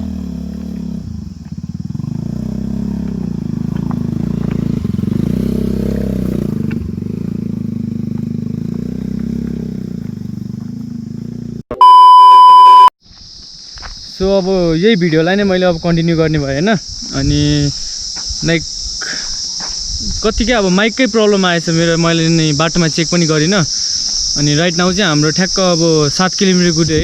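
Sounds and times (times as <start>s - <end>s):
motorcycle engine running: 0.0s - 11.6s
loud electronic beep: 11.7s - 12.9s.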